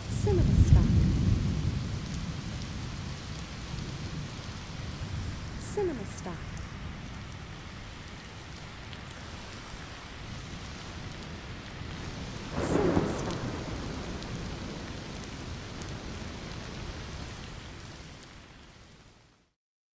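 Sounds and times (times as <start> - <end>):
thunder clap rumbling: 0.0 - 7.4, 10.8 - 18.2
steady rain falling: 0.0 - 19.6.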